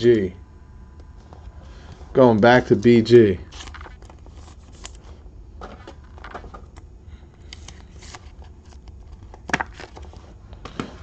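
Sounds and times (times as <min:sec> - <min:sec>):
trading cards rustling and clicking: 0:02.2 - 0:11.0.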